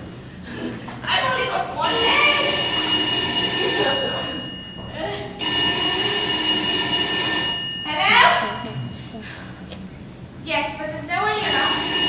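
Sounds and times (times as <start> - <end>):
telephone bell ringing: 1.8 - 9.1, 11.4 - 12.0.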